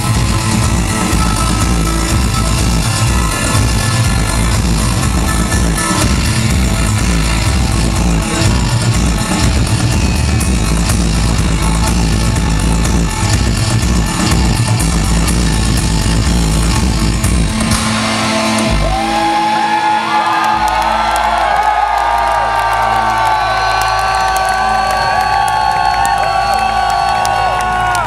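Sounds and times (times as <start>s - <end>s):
heavy bass beat: 0.0s - 19.6s
live industrial music: 0.0s - 28.0s.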